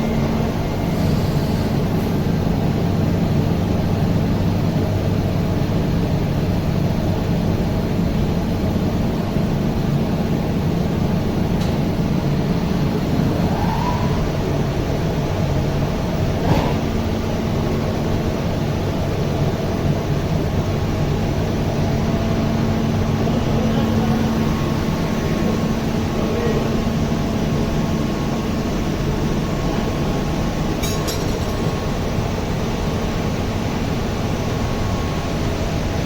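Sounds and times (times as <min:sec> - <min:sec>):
metallic clink: 0:30.8 - 0:31.8.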